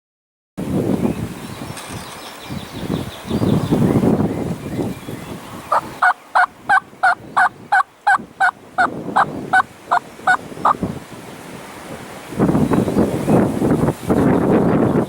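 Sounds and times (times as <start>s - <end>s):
wind rumbling on microphone: 0.6s - 15.0s
turkey yelping: 5.7s - 10.8s.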